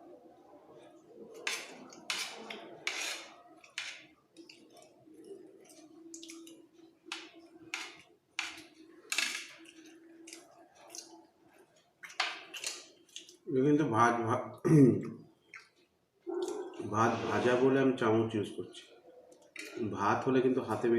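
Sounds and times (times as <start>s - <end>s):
spoon scraping a plate: 1.3s - 4.1s.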